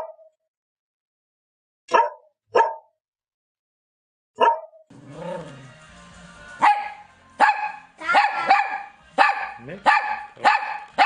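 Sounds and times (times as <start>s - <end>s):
dog barking: 0.0s - 0.3s, 1.9s - 3.0s, 4.4s - 4.8s, 6.6s - 11.0s
music: 4.9s - 11.0s.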